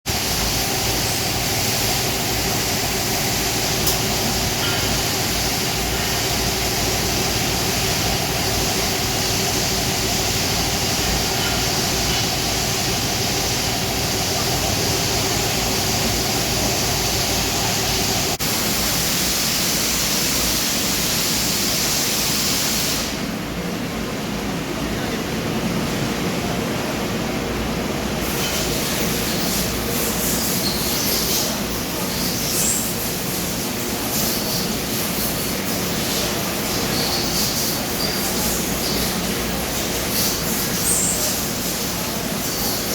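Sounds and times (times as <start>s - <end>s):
floor scrubber machine hum: 0.1s - 22.9s, 25.5s - 42.9s
floor scrubber hiss: 0.1s - 23.3s.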